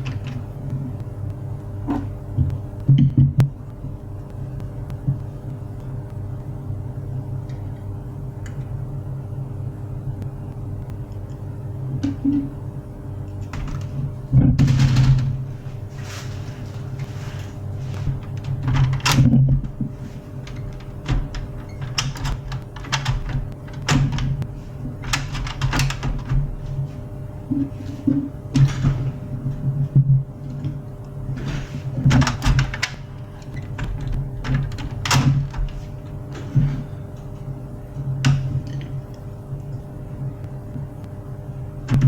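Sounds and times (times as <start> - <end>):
steady low hum: 0.0 - 42.0
printer parts clicking and clunking: 13.5 - 15.4, 17.9 - 19.8, 20.4 - 26.8, 31.5 - 36.9.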